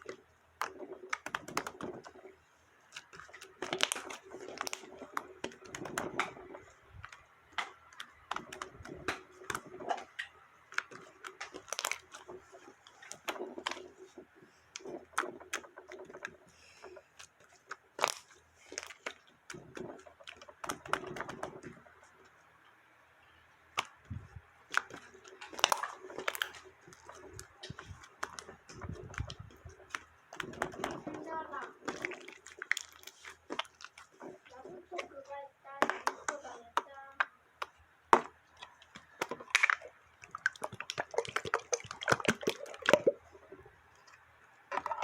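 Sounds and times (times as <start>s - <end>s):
slime squeezed and popping: 39.0s - 43.3s.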